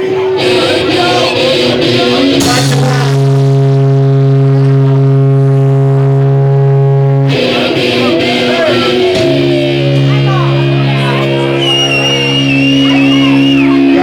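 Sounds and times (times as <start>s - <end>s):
voices and shouting: 0.0s - 3.4s, 7.3s - 14.0s
amplified low drone note: 0.0s - 14.0s.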